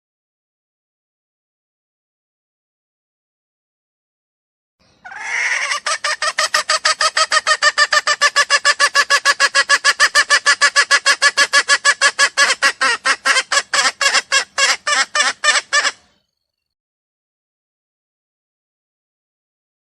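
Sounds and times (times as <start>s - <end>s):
junglefowl clucking: 5.0s - 16.2s
junglefowl call: 5.0s - 16.3s.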